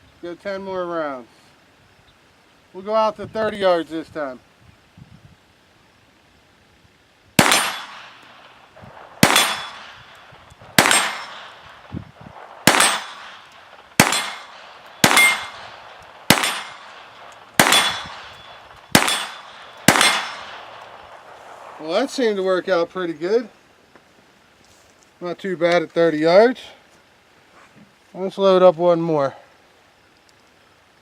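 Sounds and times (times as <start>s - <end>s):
pistol shots with echo: 7.4s - 21.8s.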